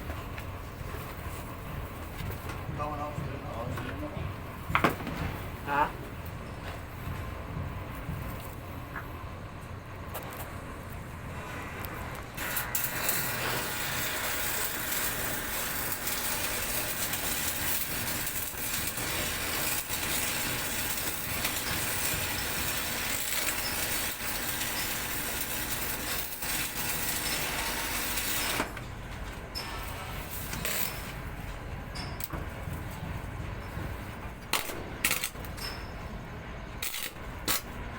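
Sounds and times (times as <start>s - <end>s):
welding arc crackling: 11.4s - 28.8s, 29.7s - 31.3s, 34.5s - 35.5s, 36.8s - 37.8s.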